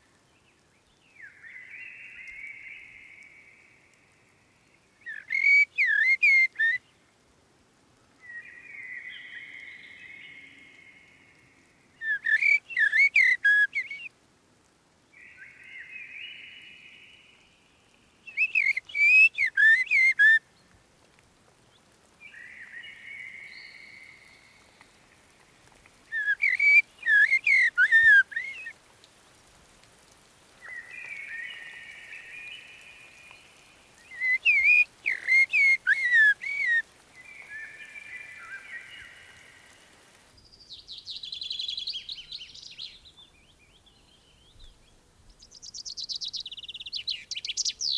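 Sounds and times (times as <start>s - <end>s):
whistled bird song phrases: 5.0s - 6.8s, 12.0s - 14.1s, 18.3s - 20.4s, 26.1s - 28.7s, 34.0s - 39.3s, 45.5s - 47.9s.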